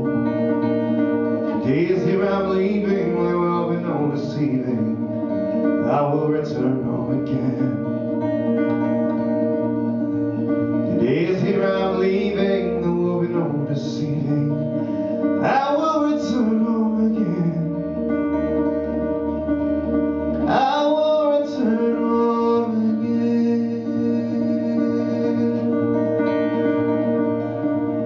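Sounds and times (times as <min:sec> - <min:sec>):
acoustic guitar: 0:00.0 - 0:28.0
man singing without words: 0:01.5 - 0:08.0, 0:10.8 - 0:18.0, 0:20.4 - 0:26.2.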